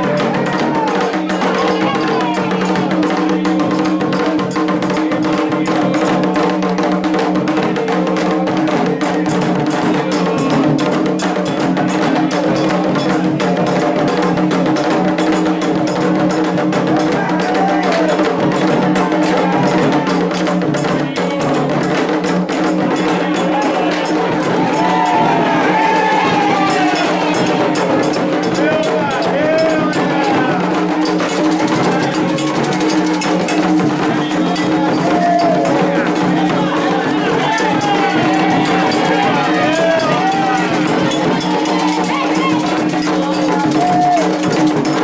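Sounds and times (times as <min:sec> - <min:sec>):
hand drums and percussion: 0:00.0 - 0:45.0
voices singing: 0:00.0 - 0:45.0.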